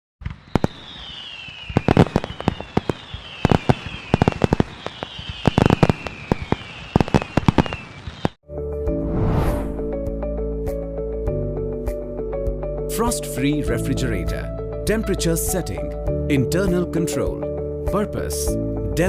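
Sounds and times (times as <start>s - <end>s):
fireworks cracks and pops: 0.2s - 8.4s
falling whistle: 0.5s - 8.4s.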